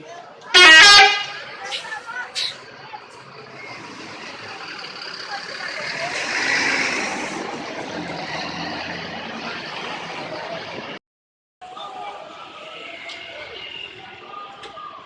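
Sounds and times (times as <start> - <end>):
bus driving past: 1.0 - 11.0.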